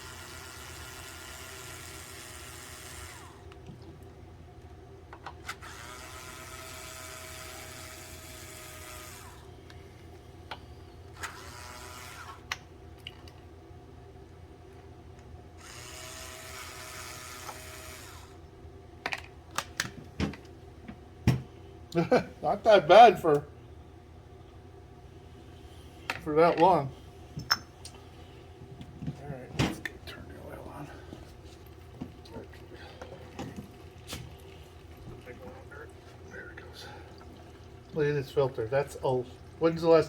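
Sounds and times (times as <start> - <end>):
power drill whine: 0.0 - 3.4, 5.4 - 9.5, 11.2 - 12.4, 15.6 - 18.4.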